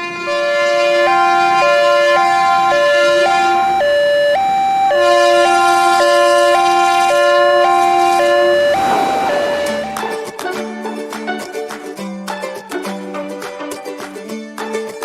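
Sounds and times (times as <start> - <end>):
steady low electronic tone: 0.4 - 10.0
electronic two-tone signal: 0.4 - 10.1.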